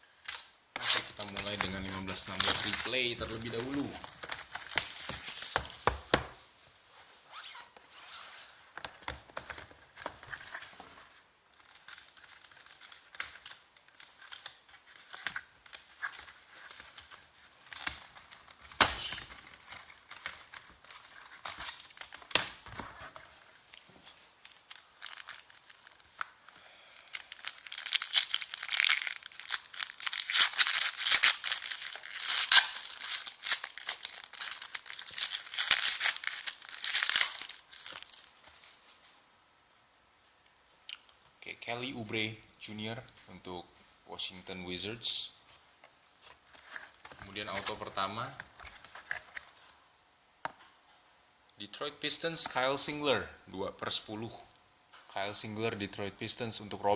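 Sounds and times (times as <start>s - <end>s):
plastic and foil wrappers crinkling: 0.1s - 6.0s, 9.9s - 39.1s.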